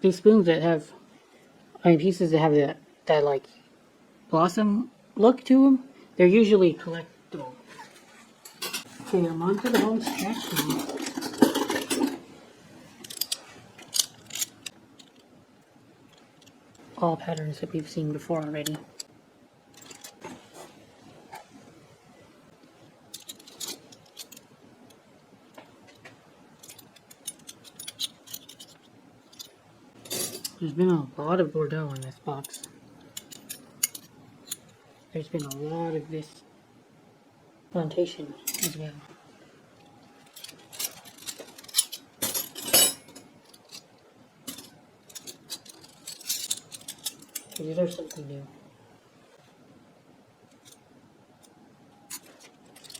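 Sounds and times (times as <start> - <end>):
metal flatware clinking: 8.4 - 8.9, 9.5 - 12.2, 40.4 - 43.3.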